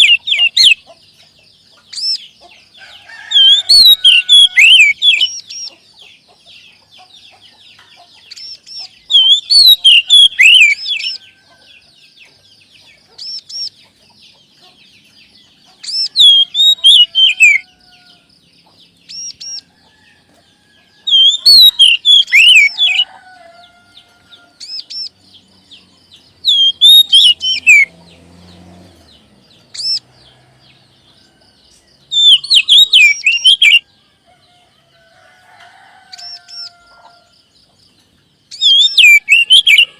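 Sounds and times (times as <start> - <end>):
bird whistled song: 0.0 - 0.9, 1.8 - 14.4, 15.1 - 17.8, 19.0 - 19.7, 21.0 - 23.2, 26.4 - 28.1, 29.7 - 30.1, 32.1 - 33.9, 38.5 - 39.9
faint high chirping: 0.0 - 39.9.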